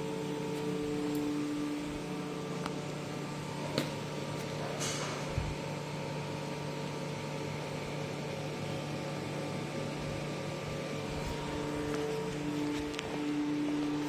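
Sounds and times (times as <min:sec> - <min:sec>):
machine electrical hum and hiss: 0:00.0 - 0:14.0.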